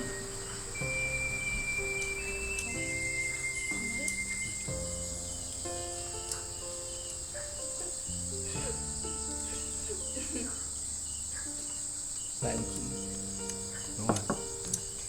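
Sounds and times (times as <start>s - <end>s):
insects chirping: 0.0s - 15.0s
soft music of held notes: 0.0s - 15.0s
sharp clicks: 1.5s - 4.6s, 5.4s - 7.4s, 12.7s - 15.0s.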